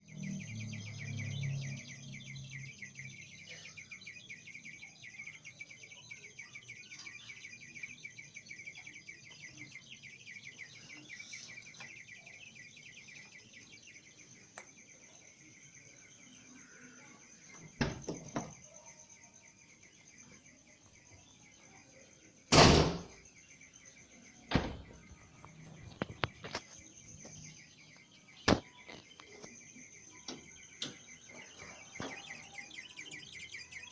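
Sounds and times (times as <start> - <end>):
sharp loud clicks: 22.5 - 23.2.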